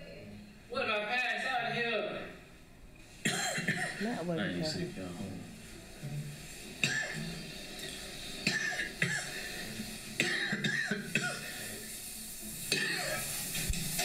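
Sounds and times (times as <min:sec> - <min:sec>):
man coughing: 0:03.3 - 0:04.0.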